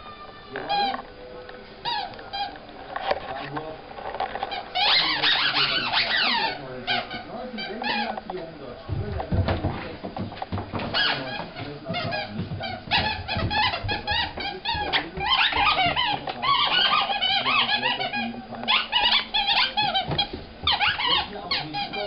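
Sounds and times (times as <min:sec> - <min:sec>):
squeaky toy squeaking: 0:01.8 - 0:02.5, 0:04.5 - 0:08.1, 0:10.9 - 0:22.0.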